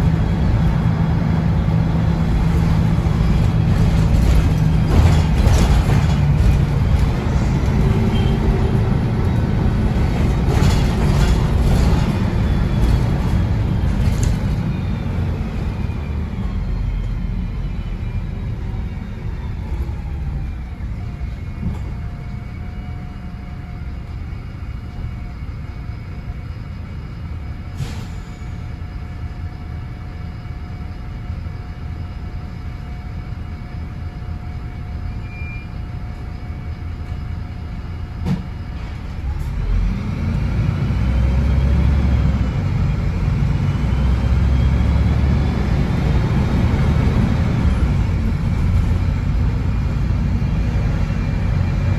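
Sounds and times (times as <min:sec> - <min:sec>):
bus engine revving and pulling away: 0:00.0 - 0:22.0, 0:38.2 - 0:51.9
bus engine idling with whine: 0:00.0 - 0:51.9.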